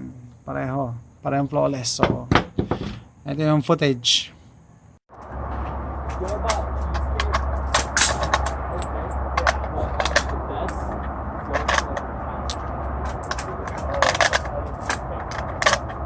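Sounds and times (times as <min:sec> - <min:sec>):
steady low rumble: 0:04.8 - 0:16.0.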